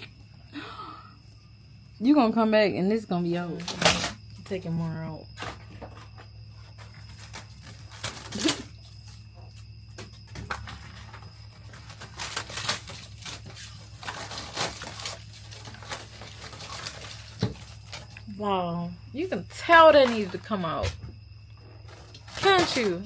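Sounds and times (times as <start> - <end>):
paneling being pried and torn out: 9.9 - 18.0.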